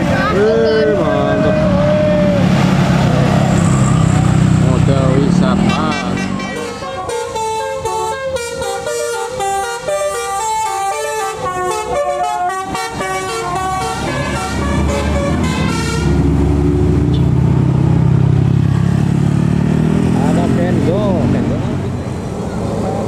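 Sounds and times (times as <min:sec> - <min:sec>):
musical air horn tune: 0:05.6 - 0:16.3.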